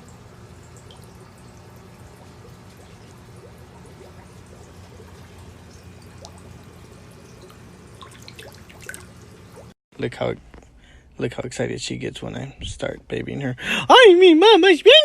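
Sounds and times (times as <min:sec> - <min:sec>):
small water drips: 0:00.0 - 0:09.8
water trickling: 0:00.0 - 0:09.8.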